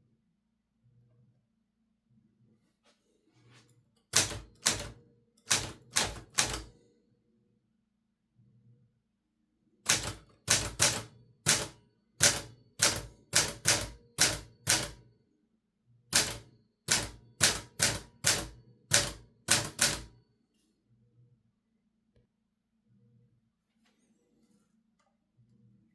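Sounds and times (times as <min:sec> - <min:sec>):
typewriter keystrokes: 0:04.2 - 0:06.7, 0:09.9 - 0:15.0, 0:16.2 - 0:20.1.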